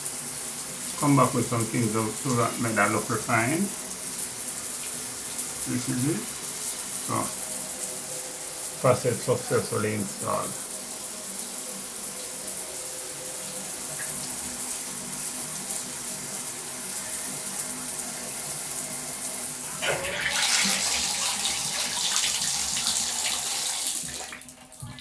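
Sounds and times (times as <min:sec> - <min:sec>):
faucet water pouring and splashing: 0:00.0 - 0:25.0.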